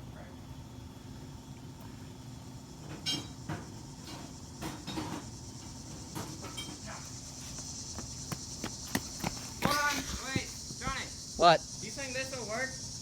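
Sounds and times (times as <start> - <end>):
high-pitched insect chorus: 2.2 - 13.0.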